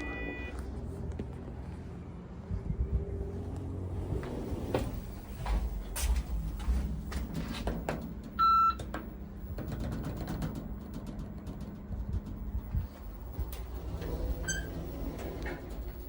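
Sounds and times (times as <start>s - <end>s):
short electronic beep: 0.0s - 0.6s.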